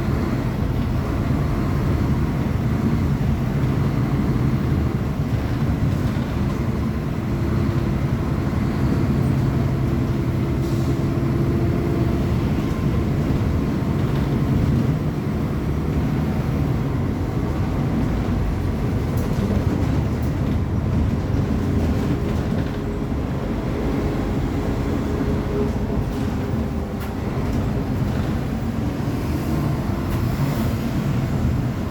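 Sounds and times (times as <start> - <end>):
bus diesel engine droning: 0.0 - 31.9.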